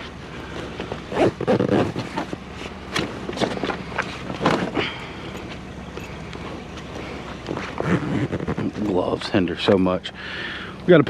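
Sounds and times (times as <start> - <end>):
vehicle engine idling: 0.0 - 11.0
knocks and clatters of handling: 0.5 - 9.0.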